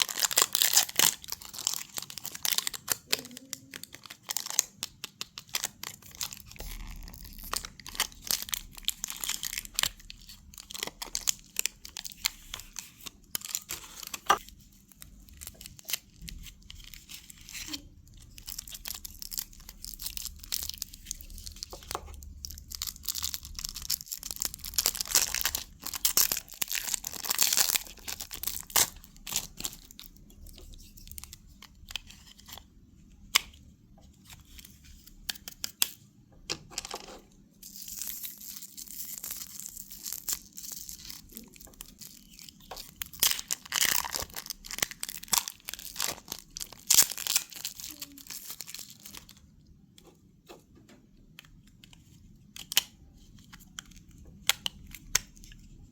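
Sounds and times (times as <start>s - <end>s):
packaging tearing and crinkling: 0.0s - 32.6s, 37.6s - 49.4s.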